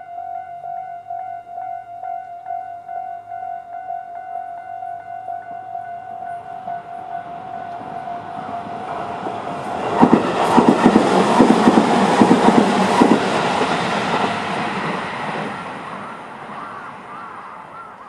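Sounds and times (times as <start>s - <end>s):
crossing alarm tone: 0.0s - 18.0s
train wheels clacking on rail joints: 7.3s - 18.0s.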